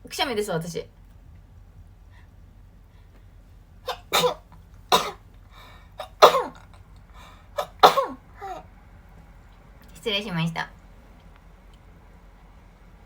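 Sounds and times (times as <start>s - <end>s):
woman sneezing: 3.9s - 5.2s, 6.0s - 6.6s, 7.6s - 8.6s.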